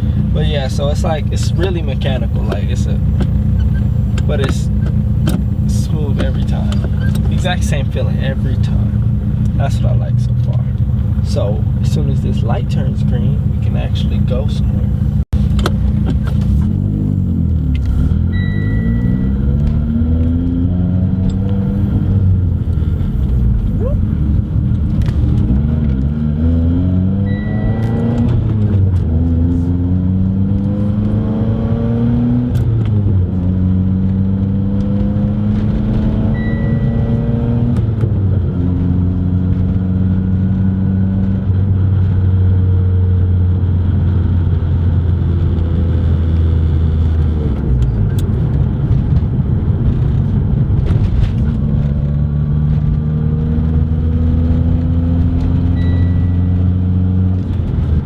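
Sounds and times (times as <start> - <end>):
car engine accelerating: 0.0 - 58.0
short high beep: 18.3 - 19.6, 27.2 - 28.3, 36.2 - 37.5, 55.7 - 56.6.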